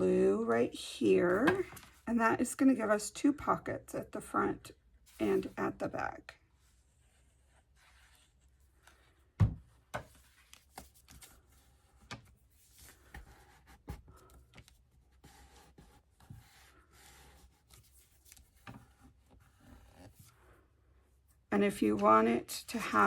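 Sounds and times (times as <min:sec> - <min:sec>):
paper rustling and rubbing: 0:06.6 - 0:09.2, 0:10.0 - 0:20.6
soft thump: 0:09.4 - 0:09.7.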